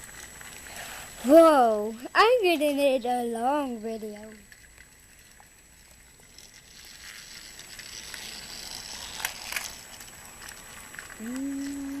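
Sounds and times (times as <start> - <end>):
toy train whirring and clattering: 0.0 - 12.0.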